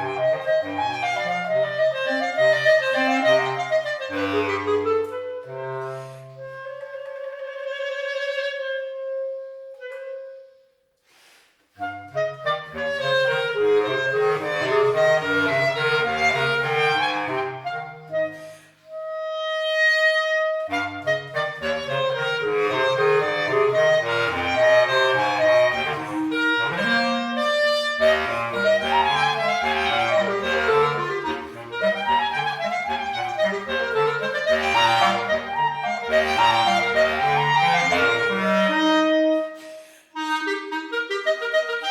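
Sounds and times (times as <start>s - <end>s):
clarinet playing: 0.0s - 10.9s, 11.8s - 41.9s.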